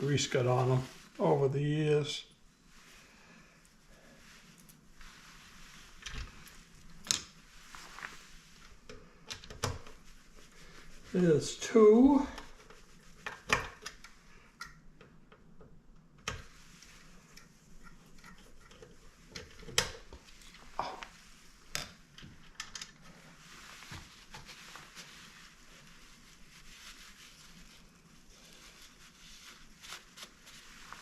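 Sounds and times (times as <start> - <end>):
soft rubbing: 0.0 - 8.9, 9.9 - 13.3, 20.2 - 22.1, 23.0 - 31.0.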